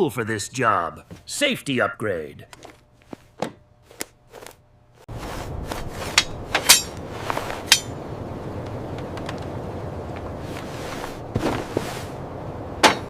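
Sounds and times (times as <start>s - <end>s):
steady background noise: 0.0s - 13.0s.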